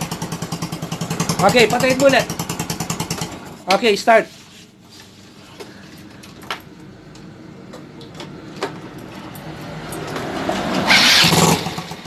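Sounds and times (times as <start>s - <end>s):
scooter engine running and revving: 0.0s - 3.5s, 9.9s - 12.0s.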